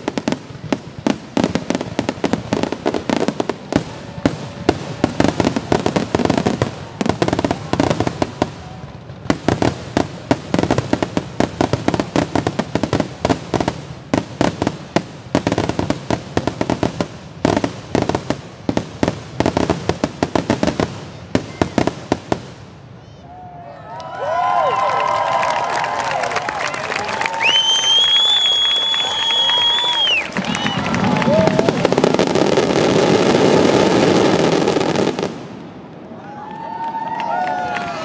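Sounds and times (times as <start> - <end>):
fireworks bangs and crackles: 0.0 - 23.2, 26.6 - 38.0
loud fireworks booms: 0.0 - 23.4, 27.3 - 37.1.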